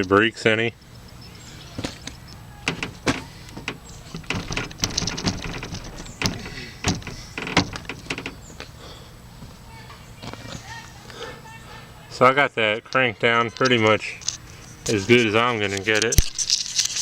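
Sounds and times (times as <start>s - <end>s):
vise scraping: 0.8s - 8.6s
metal vise clicks and knocks: 2.7s - 8.4s.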